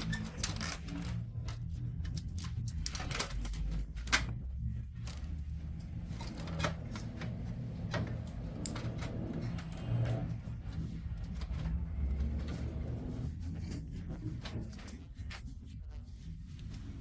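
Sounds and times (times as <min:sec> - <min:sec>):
clicks and rattles of parts: 0:00.0 - 0:10.4
steady low hum: 0:00.0 - 0:17.0.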